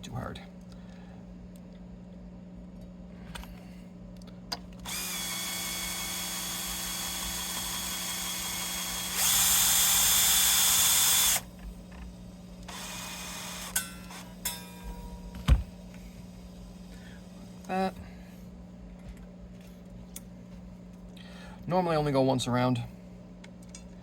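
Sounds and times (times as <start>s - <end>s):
string winder motor whirring: 4.8s - 11.6s, 12.7s - 14.4s.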